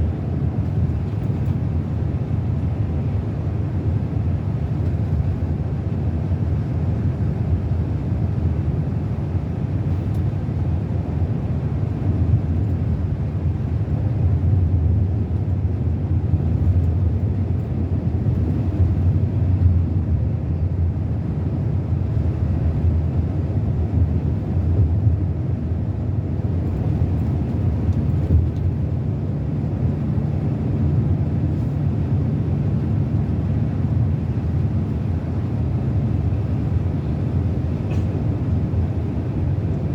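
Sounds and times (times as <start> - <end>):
diesel bus engine droning: 0.0 - 39.9.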